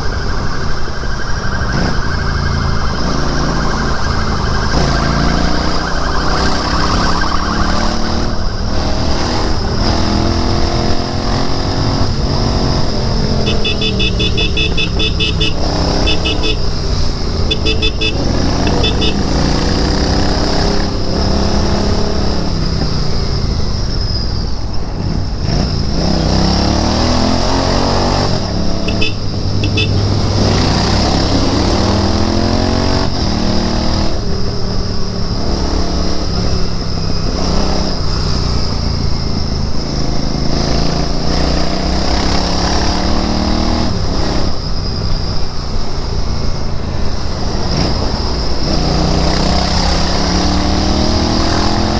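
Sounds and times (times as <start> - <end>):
motorcycle engine revving through gears: 1.6 - 51.9
short high beeps: 13.3 - 19.6, 28.8 - 30.2.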